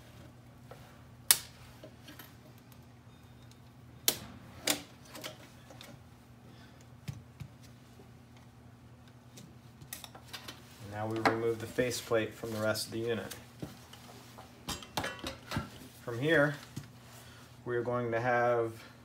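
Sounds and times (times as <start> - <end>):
faint steady hum: 0.0 - 19.0.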